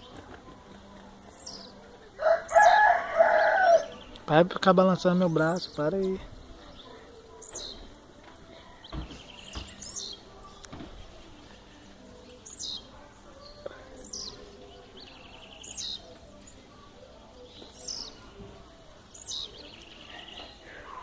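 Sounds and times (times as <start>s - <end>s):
bird singing buzzy song: 0.0s - 21.0s.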